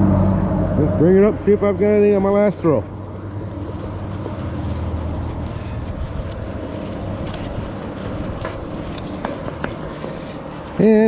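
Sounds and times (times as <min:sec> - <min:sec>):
vehicle engine and tyre noise: 0:00.0 - 0:11.0.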